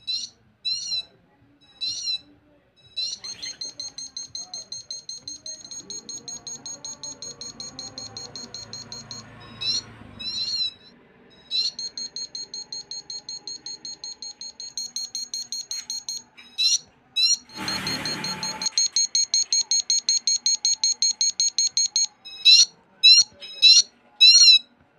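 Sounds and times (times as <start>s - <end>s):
electronic siren beeping: 2.9s - 24.6s
warbling chirps: 3.0s - 15.6s.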